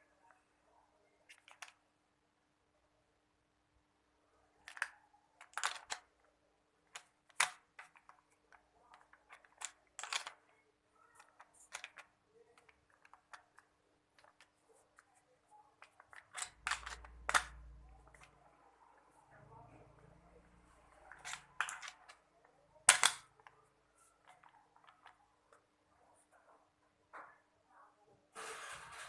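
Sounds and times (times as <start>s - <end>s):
hard objects clicking and knocking: 1.3s - 1.8s, 4.6s - 15.1s, 15.8s - 18.5s, 20.8s - 25.7s.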